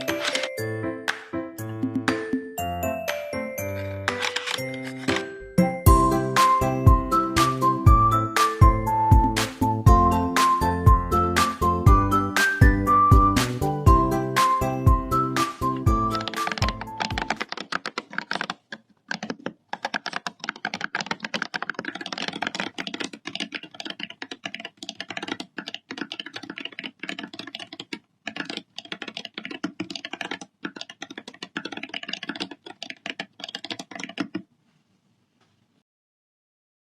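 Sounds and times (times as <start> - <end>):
fast keyboard typing: 0.0 - 0.6, 3.7 - 5.3, 15.4 - 34.5.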